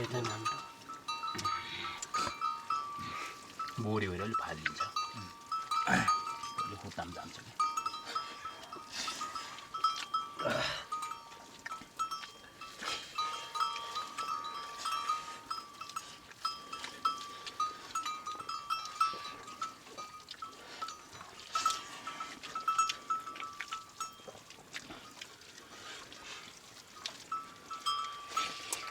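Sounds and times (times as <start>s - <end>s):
neck bells clinking: 0.0s - 28.9s
sheep and goats bleating: 5.1s - 6.6s.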